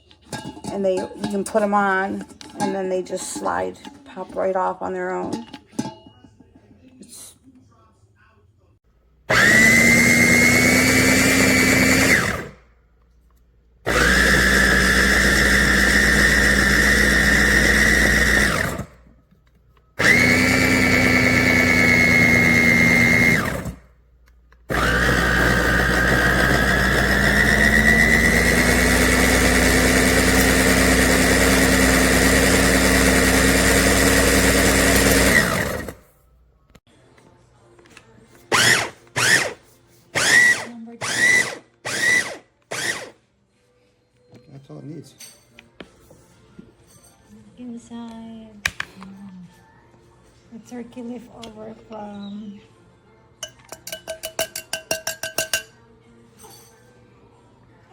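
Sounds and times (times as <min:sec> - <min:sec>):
food chopper motor whirring: 0:09.3 - 0:12.7, 0:13.9 - 0:19.0, 0:20.0 - 0:23.9, 0:24.7 - 0:36.0, 0:38.5 - 0:39.6, 0:40.2 - 0:43.2.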